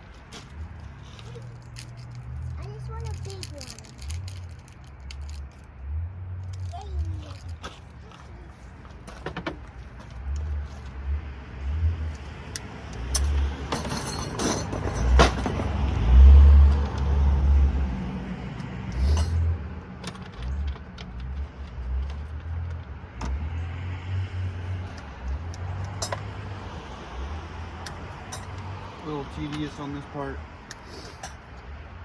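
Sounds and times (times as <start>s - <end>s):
small metal parts clinking: 0.3s - 5.7s, 6.4s - 10.9s, 12.9s - 15.8s, 18.9s - 19.4s, 24.9s - 26.3s, 27.8s - 28.6s, 30.7s - 31.6s.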